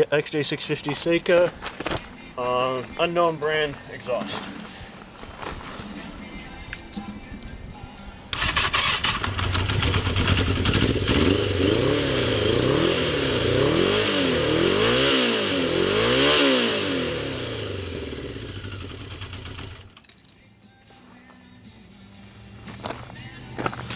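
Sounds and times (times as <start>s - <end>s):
motorcycle engine starting and revving: 8.3s - 20.1s.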